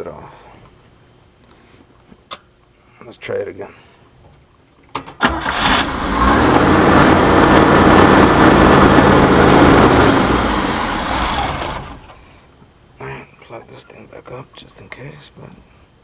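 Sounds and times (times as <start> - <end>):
engine running fast: 5.4 - 12.2.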